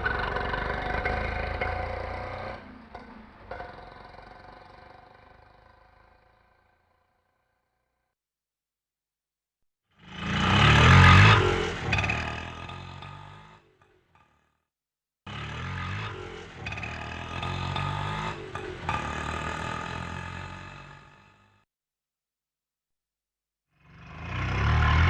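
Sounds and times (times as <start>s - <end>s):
auto-rickshaw engine: 0.0s - 7.0s, 10.0s - 14.2s, 15.3s - 21.6s, 23.8s - 25.0s.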